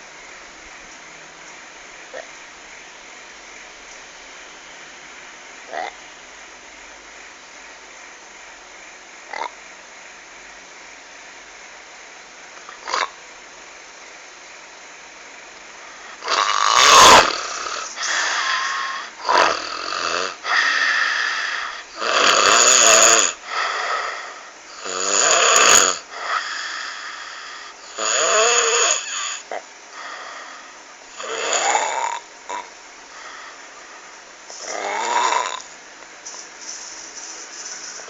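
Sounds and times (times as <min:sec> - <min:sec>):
person snoring croakily: 0:05.7 - 0:06.0, 0:16.0 - 0:27.2, 0:27.8 - 0:30.4, 0:31.1 - 0:33.5, 0:34.5 - 0:35.7.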